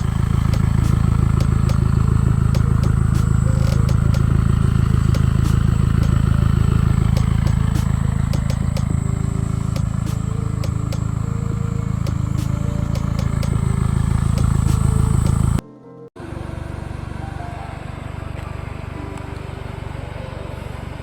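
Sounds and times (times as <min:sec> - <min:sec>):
car engine idling: 0:00.0 - 0:15.6.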